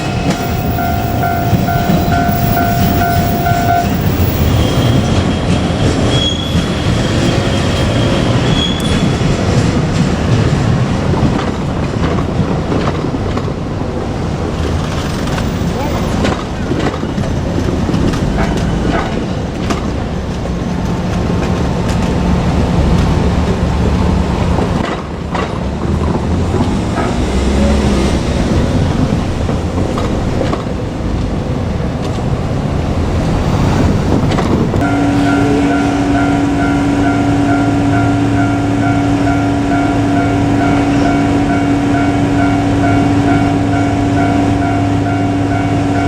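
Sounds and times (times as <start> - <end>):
steady pitched tone: 0.0 - 5.4, 34.8 - 46.0
electric train rumbling past: 0.0 - 46.0.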